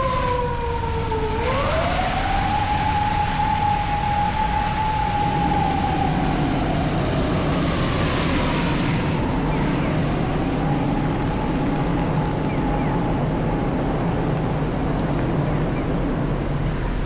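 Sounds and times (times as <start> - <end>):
heavy rain hissing: 0.0 - 11.8.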